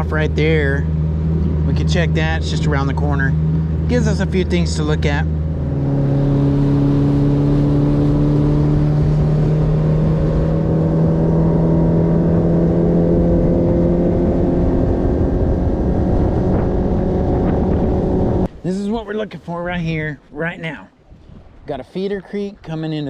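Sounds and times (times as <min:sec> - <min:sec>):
outboard motor running: 0:00.0 - 0:21.6
water noise: 0:00.0 - 0:23.0
wind noise: 0:05.3 - 0:23.0.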